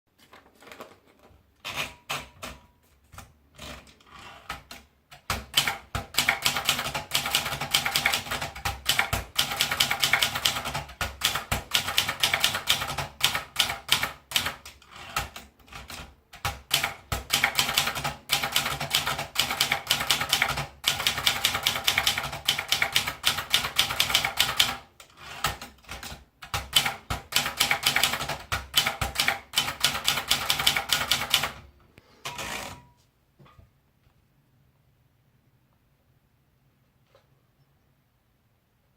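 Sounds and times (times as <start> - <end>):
typewriter keystrokes: 4.5 - 31.6.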